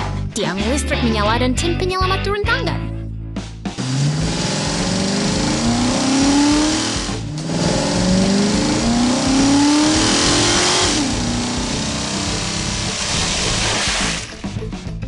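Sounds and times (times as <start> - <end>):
cartoon engine revving: 3.8 - 14.2.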